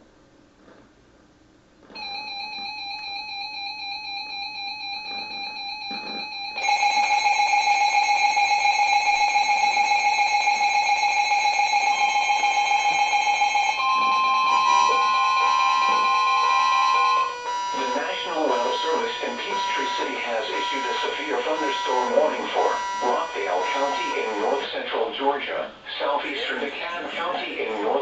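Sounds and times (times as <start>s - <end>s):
pulsing electronic alert tone: 13.8s - 24.6s
steady two-pitch alert tone: 13.8s - 24.6s.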